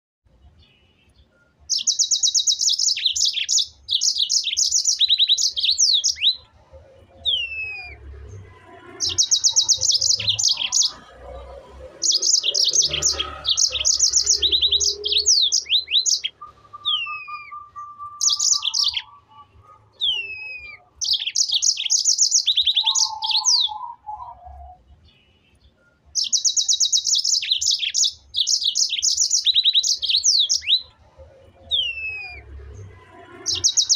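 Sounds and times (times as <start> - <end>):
bird singing high trills: 0.6 - 33.9
downward-sliding whistles: 16.4 - 18.7.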